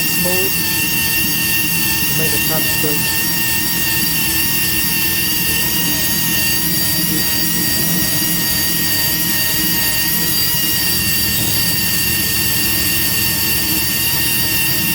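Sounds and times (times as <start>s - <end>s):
tire buffer whining: 0.0s - 8.8s.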